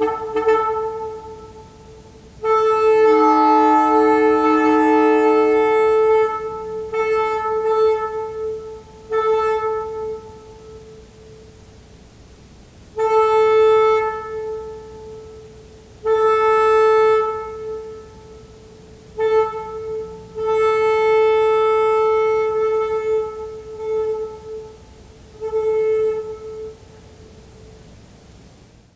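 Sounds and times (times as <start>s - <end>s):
locomotive air horn blasts: 0.0s - 11.1s, 13.0s - 27.4s.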